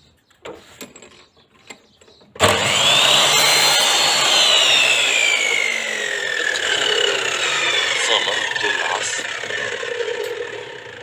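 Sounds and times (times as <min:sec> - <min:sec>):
mitre saw motor whining: 0:02.4 - 0:11.0.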